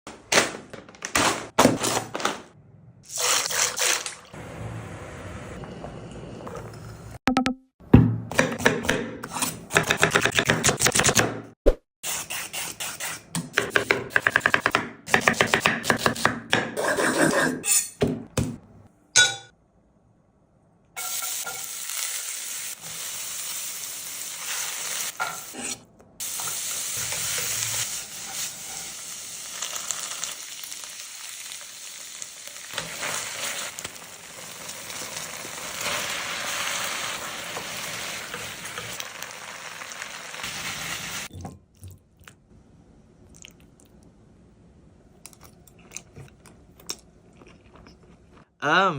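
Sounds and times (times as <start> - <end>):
food sizzling in a pan: 21.0 - 41.3.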